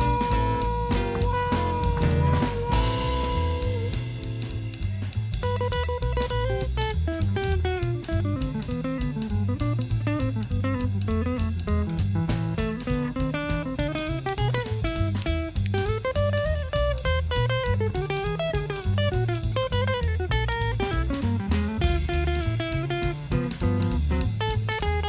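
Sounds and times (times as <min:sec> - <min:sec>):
plucked-string solo: 0:00.0 - 0:04.8
drums keeping a beat: 0:00.0 - 0:25.0
jazz guitar lead: 0:00.0 - 0:25.0
walking bass line: 0:00.0 - 0:25.0.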